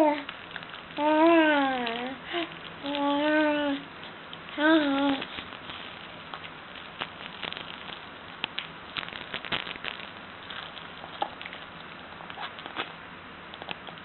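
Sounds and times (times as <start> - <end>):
small objects clicking: 4.3 - 12.9.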